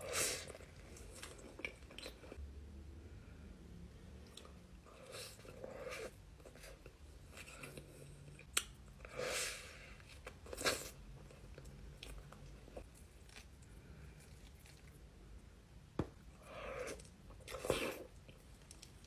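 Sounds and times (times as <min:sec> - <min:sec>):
person chewing food: 0:00.4 - 0:02.4, 0:10.0 - 0:15.0.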